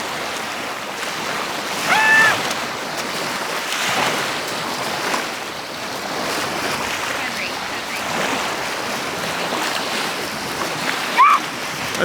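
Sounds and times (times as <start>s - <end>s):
waves breaking on a beach: 0.0s - 12.0s
brief high-pitched cry: 1.8s - 2.4s.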